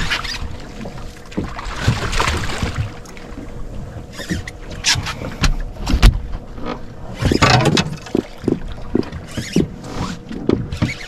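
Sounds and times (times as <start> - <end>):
water splashing: 0.0 - 4.5.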